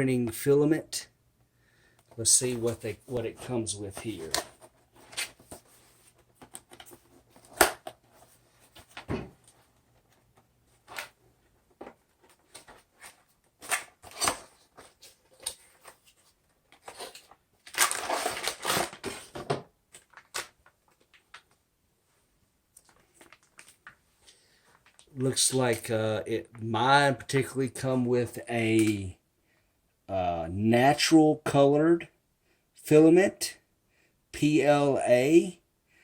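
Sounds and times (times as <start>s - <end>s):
packaging rustling: 2.5s - 21.6s, 22.8s - 24.0s.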